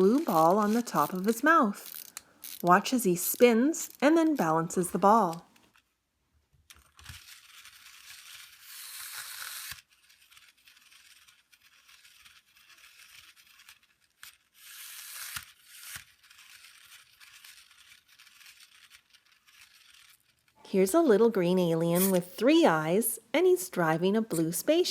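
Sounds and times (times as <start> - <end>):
wind-up toy whirring: 0.0 - 5.4, 6.8 - 20.6.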